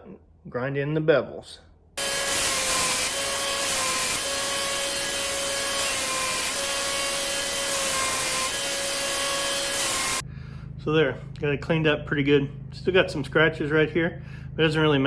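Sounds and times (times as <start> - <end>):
electric grinder running: 2.0 - 10.2.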